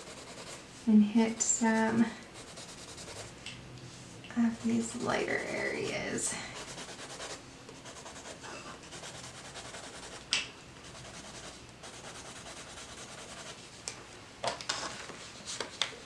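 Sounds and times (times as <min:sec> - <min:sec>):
pencil scratching on paper: 0:00.0 - 0:00.6, 0:01.3 - 0:03.3, 0:06.6 - 0:10.2, 0:10.8 - 0:13.6.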